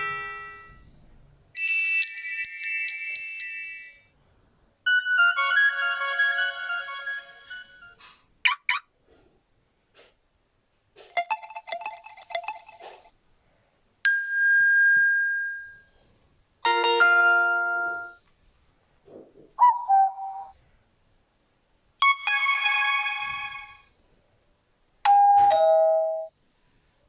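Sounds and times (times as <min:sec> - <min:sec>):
ringing ding: 0:14.1 - 0:15.9.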